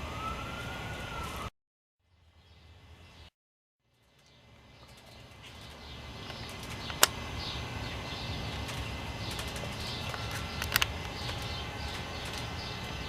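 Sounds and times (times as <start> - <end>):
birds chirping: 3.9 - 13.0
steady low rumble: 4.0 - 13.0
sharp clicks: 4.2 - 7.2, 8.6 - 13.0.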